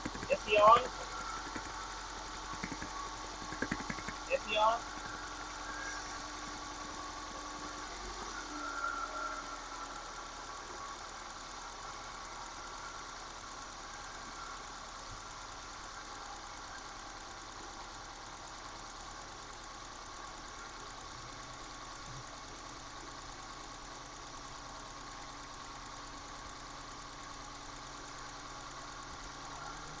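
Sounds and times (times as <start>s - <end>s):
car engine idling: 0.0s - 21.9s
faint steady whine: 0.0s - 30.0s.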